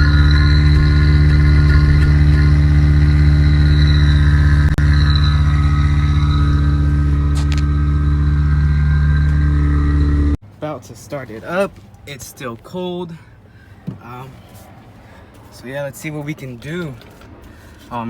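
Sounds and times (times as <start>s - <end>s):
rotary engine idling: 0.0s - 10.4s.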